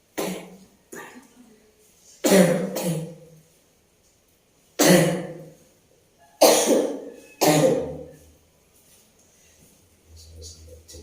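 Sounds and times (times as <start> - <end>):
woman coughing: 0.2 - 1.2, 2.2 - 3.2, 4.8 - 5.4, 6.4 - 8.1.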